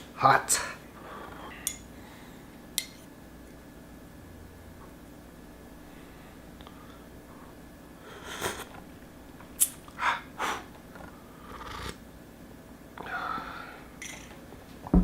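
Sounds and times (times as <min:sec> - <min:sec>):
person sniffing and snorting: 0:08.0 - 0:08.8, 0:11.4 - 0:12.0.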